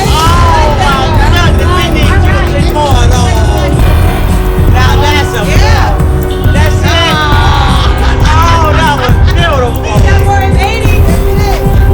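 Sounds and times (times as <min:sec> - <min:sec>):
song with sung vocals: 0:00.0 - 0:11.9.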